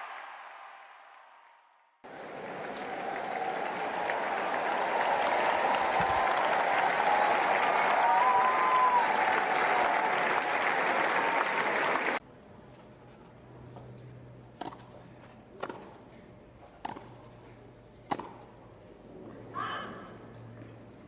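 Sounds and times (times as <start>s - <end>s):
crowd applauding: 2.0s - 12.2s.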